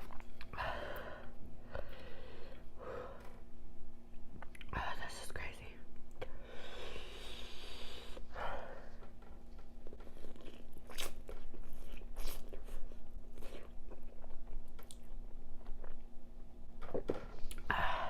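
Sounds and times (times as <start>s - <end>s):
person chewing food: 9.0s - 16.1s.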